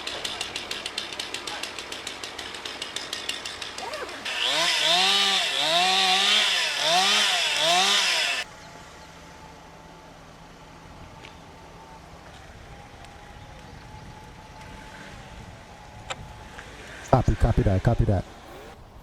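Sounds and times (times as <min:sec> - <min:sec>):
rapid rattling hammering: 0:00.0 - 0:08.4
small engine revving: 0:00.0 - 0:08.5, 0:13.0 - 0:19.0.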